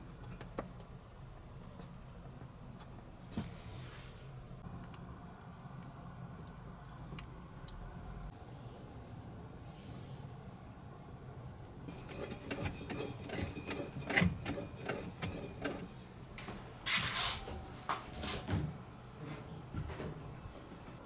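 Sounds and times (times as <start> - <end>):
scraping or rustling: 11.9 - 20.2.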